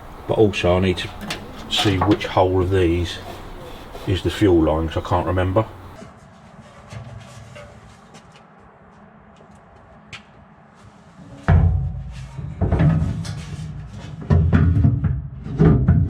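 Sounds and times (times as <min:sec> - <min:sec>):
small knocks: 0:00.9 - 0:06.0.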